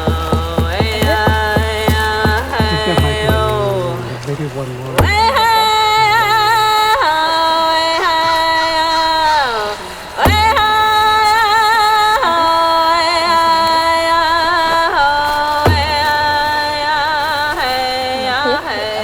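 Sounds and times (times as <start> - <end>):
low drum hits: 0.0 - 6.5.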